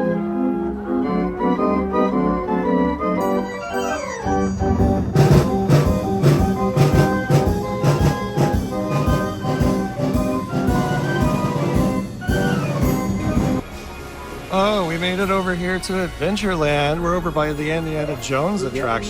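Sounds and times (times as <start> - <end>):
mechanical organ pipes playing: 0.0 - 13.6
drums and percussion: 3.3 - 16.1.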